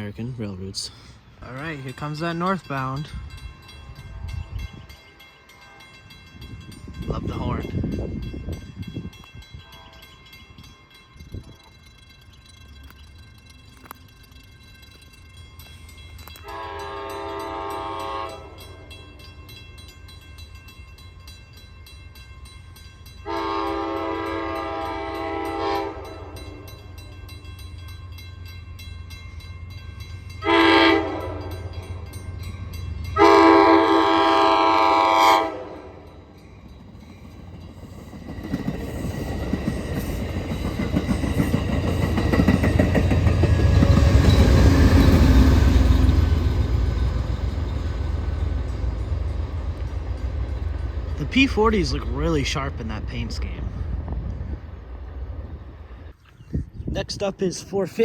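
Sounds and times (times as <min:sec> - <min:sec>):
train engine and wheels on rails: 0:00.0 - 0:58.0
locomotive air horn: 0:09.6 - 0:10.1, 0:16.4 - 0:18.9, 0:23.2 - 0:26.6, 0:30.4 - 0:31.6, 0:33.2 - 0:36.1.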